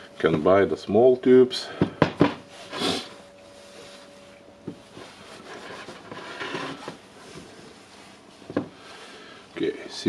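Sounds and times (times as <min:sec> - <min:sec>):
soft rustling and scraping: 0:02.4 - 0:09.2.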